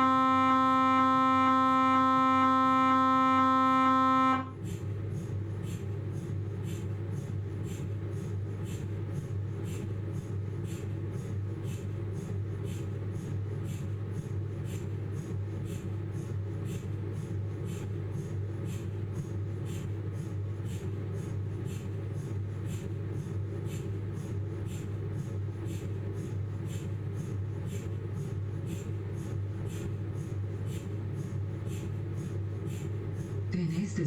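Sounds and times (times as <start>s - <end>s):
mri scanner buzzing tone: 0.0s - 5.9s.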